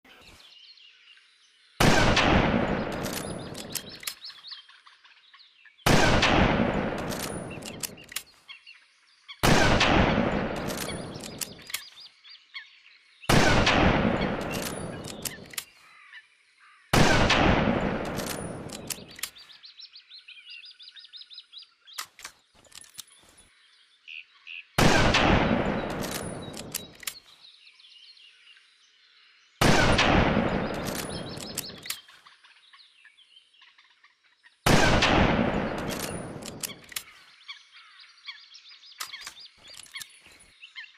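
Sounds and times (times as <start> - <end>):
rifle shots echoing: 1.8 - 4.1, 5.9 - 8.2, 9.4 - 11.7, 13.3 - 15.6, 16.9 - 19.3, 24.8 - 27.1, 29.6 - 31.9, 34.7 - 37.0
rifle bolt clicks: 2.2 - 4.3, 6.2 - 8.3, 9.8 - 11.9, 13.7 - 15.7, 17.3 - 19.4, 22.0 - 23.2, 24.9 - 27.2, 29.8 - 32.0, 34.7 - 37.1, 39.0 - 40.2.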